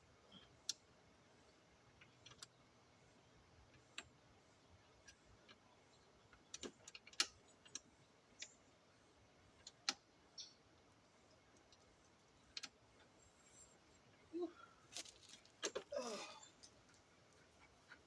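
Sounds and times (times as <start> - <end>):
hard parts clicking and tapping: 6.2 - 8.6.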